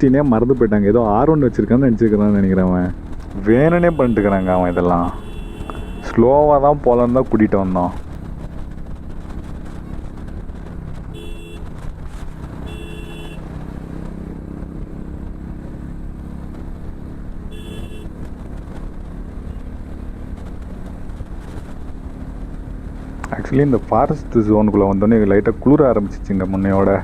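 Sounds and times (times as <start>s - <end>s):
road noise: 0.0s - 27.0s
motorcycle engine: 1.0s - 26.7s
short horn honks: 3.2s - 6.2s, 11.1s - 11.7s, 12.6s - 13.4s, 17.5s - 18.1s.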